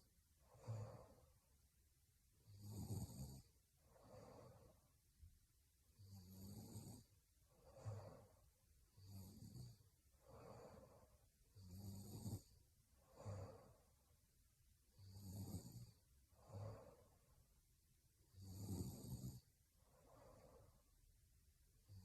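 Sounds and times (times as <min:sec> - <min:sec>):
woman snoring softly: 0:00.4 - 0:01.4, 0:02.4 - 0:04.9, 0:06.0 - 0:14.0, 0:14.9 - 0:17.4, 0:18.3 - 0:21.0, 0:21.8 - 0:22.0.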